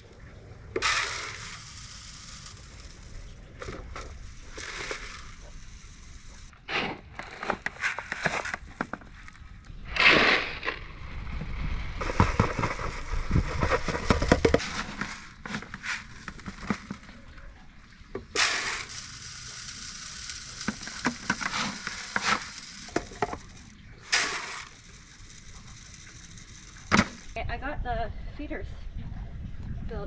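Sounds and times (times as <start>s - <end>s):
chicken feed pouring into feeder: 0.8s - 6.1s, 18.4s - 27.4s
pellets ticking: 0.8s - 6.5s, 12.0s - 17.2s, 18.2s - 27.4s.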